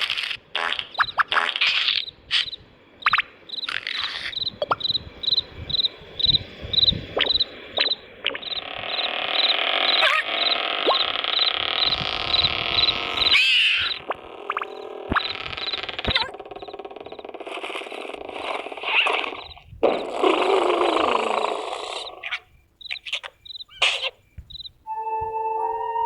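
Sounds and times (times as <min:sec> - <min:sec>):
cartoon sound effects: 0:00.6 - 0:02.1, 0:09.9 - 0:11.1, 0:13.3 - 0:16.4
cricket-like chirping: 0:00.8 - 0:26.0
sustained sound: 0:24.9 - 0:26.0.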